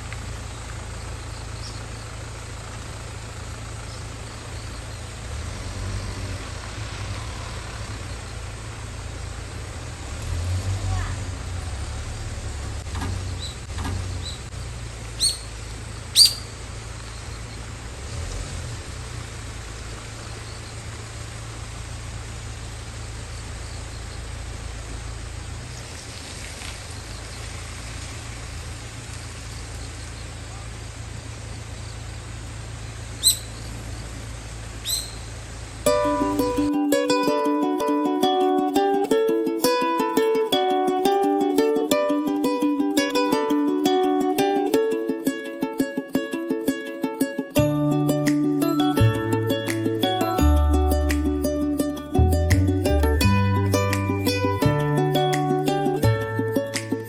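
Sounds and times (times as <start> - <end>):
insect chorus: 0.1 - 9.8, 13.1 - 35.9.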